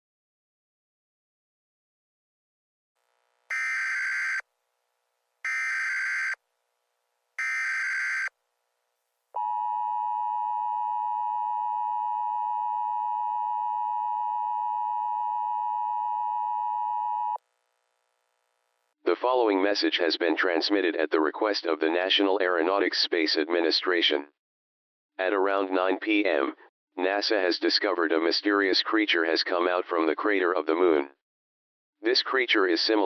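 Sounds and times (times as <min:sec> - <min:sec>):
harsh digital data bursts: 0:03.5 - 0:04.4, 0:07.4 - 0:08.3
two-tone attention signal: 0:03.5 - 0:04.4.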